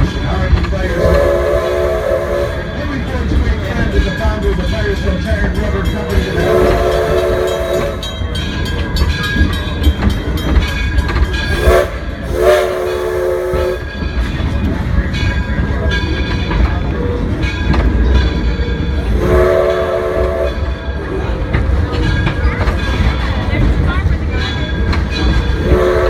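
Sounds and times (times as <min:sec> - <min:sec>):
train cars clattering: 0:00.0 - 0:26.0
train rumbling: 0:00.0 - 0:26.0
steam locomotive whistle: 0:00.9 - 0:02.7, 0:06.3 - 0:08.1, 0:11.5 - 0:13.9, 0:19.1 - 0:20.7, 0:25.6 - 0:26.0.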